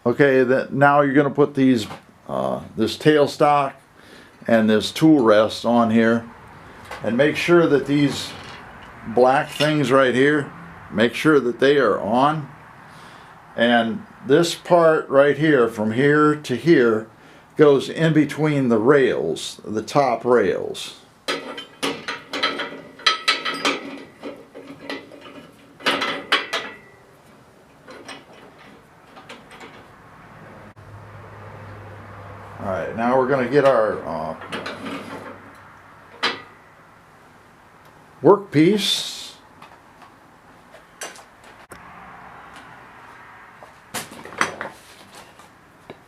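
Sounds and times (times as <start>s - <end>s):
metal lathe parts clanking: 6.8s - 10.2s, 21.3s - 30.0s, 33.4s - 36.8s
ringing metallic knocks: 21.3s - 27.1s, 36.1s - 36.8s.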